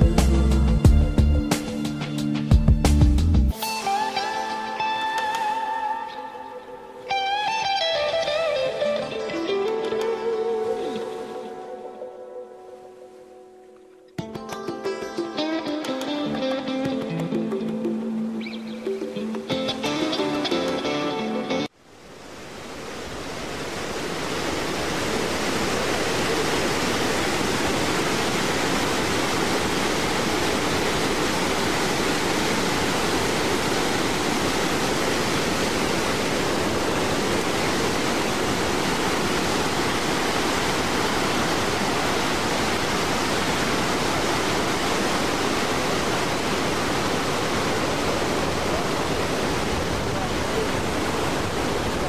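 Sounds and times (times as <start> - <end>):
waterfall rushing: 3.5 - 13.7, 15.3 - 52.0.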